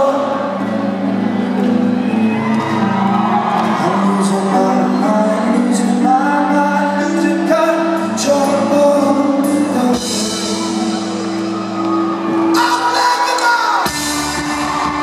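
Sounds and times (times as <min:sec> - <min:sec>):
man singing: 0:00.0 - 0:00.8, 0:03.8 - 0:11.3, 0:12.5 - 0:14.2
rock band playing live: 0:00.0 - 0:15.0.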